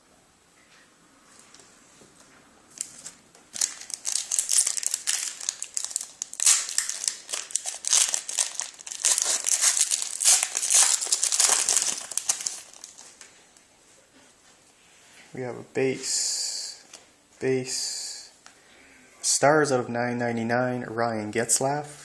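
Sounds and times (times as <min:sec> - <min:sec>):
wrapper crinkling: 0:02.7 - 0:13.4.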